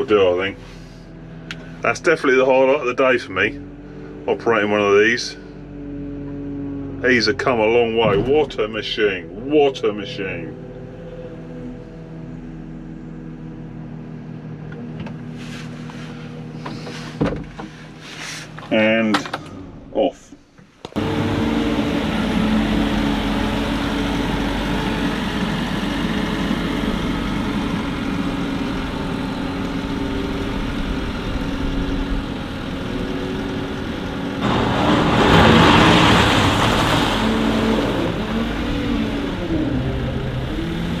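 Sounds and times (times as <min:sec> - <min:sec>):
diesel engine running: 0:21.0 - 0:41.0.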